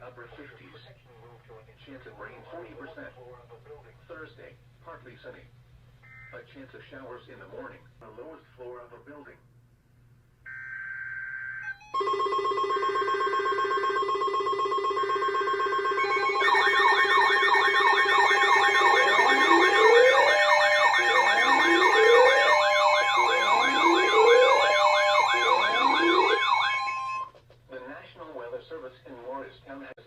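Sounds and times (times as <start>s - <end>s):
steady alarm tones: 10.5s - 27.3s
warbling and wailing sirens: 10.5s - 27.3s.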